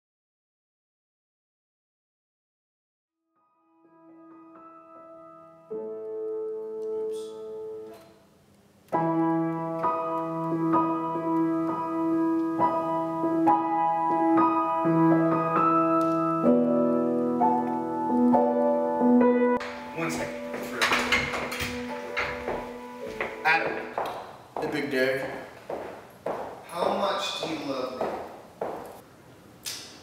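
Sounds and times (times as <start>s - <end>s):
piano music: 3.4s - 8.2s, 8.9s - 24.5s.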